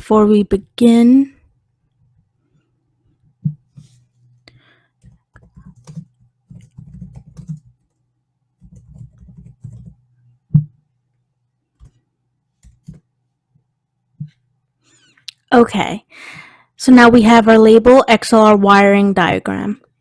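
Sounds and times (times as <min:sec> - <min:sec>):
typing on computer keyboard: 0:05.0 - 0:08.0, 0:08.6 - 0:10.0.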